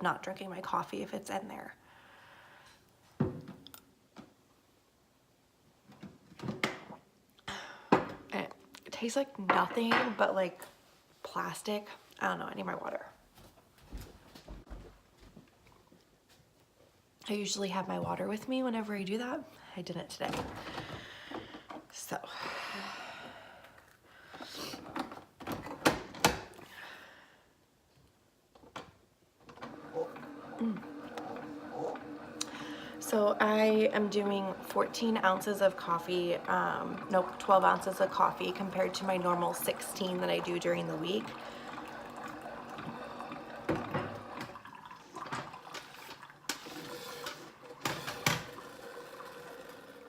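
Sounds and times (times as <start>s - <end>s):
coffee pouring into mug: 29.7s - 50.0s.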